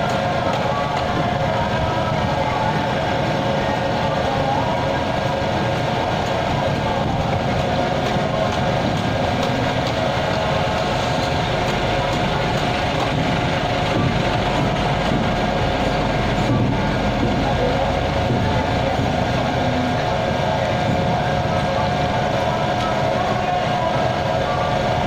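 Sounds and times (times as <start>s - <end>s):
engine drone: 0.0s - 25.0s
steady machine whine: 0.0s - 25.0s.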